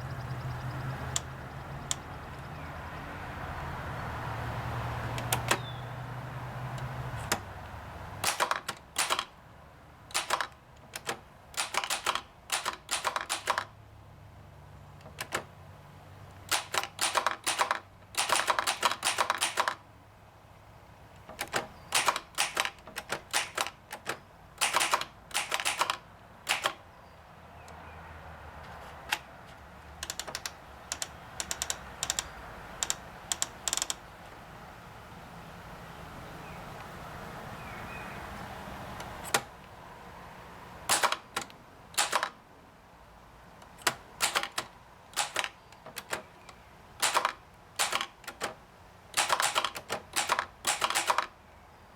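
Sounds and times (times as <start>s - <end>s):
typewriter typing clicks: 8.2s - 9.3s, 10.1s - 13.8s, 15.0s - 15.5s, 16.4s - 19.8s, 21.2s - 26.8s, 30.0s - 34.0s, 40.9s - 42.4s, 43.6s - 51.4s.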